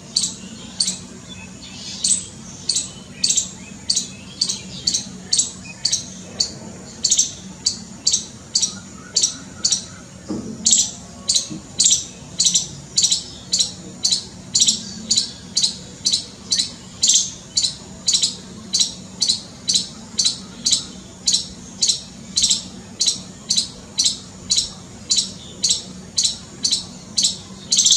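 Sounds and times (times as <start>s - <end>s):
squirrel alarm chirps: 0.1s - 10.0s, 10.7s - 27.9s.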